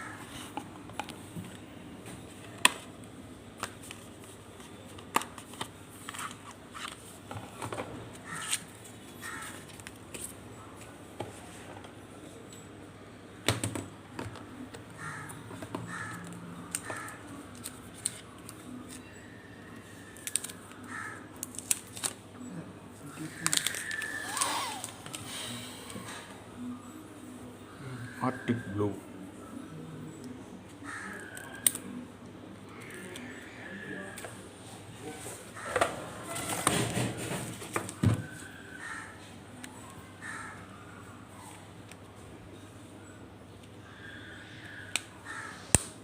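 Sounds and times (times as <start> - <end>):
packaging clicks and rustling: 21.4 - 22.2, 23.3 - 25.3.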